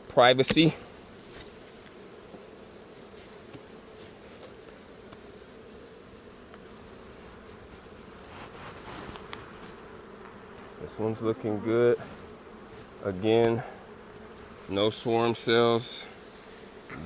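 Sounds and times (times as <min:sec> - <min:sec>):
honeybees buzzing: 0:00.0 - 0:17.0.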